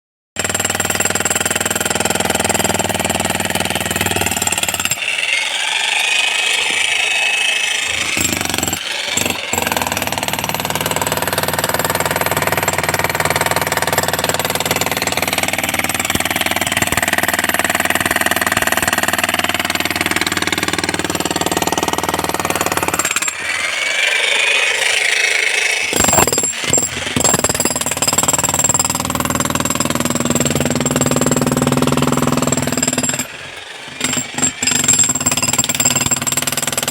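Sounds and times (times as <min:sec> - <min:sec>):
electric hammer breaking concrete: 0:00.4 - 0:36.9.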